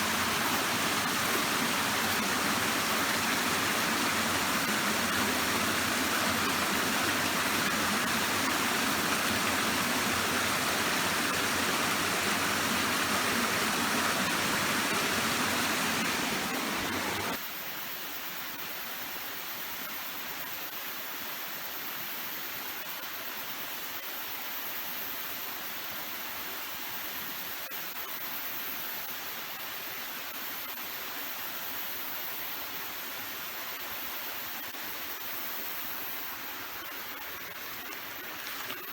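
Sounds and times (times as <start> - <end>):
running water rushing: 0.0 - 17.4, 34.5 - 38.9.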